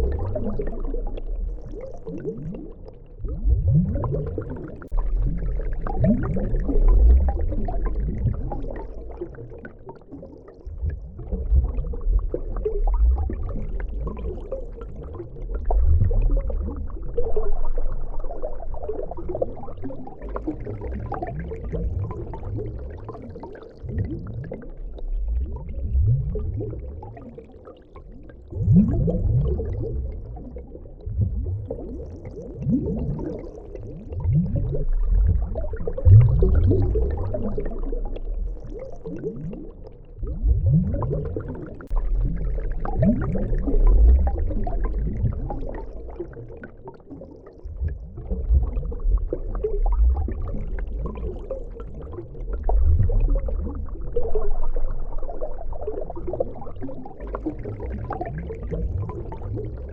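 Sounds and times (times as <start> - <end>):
rising bubble blips: 0.0 - 9.4, 31.0 - 59.9
underwater bubbling and gurgling: 0.0 - 59.9.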